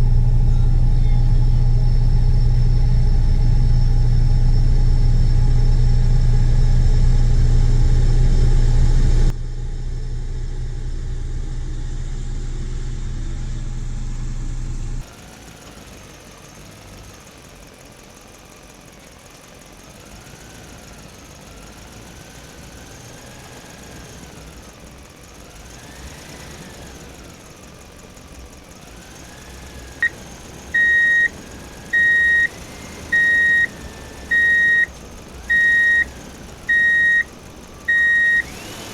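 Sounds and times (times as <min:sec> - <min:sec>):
truck engine idling: 0:09.4 - 0:38.9
reversing alarm beeps: 0:30.0 - 0:34.9, 0:35.5 - 0:36.1, 0:36.7 - 0:37.3, 0:37.9 - 0:38.6.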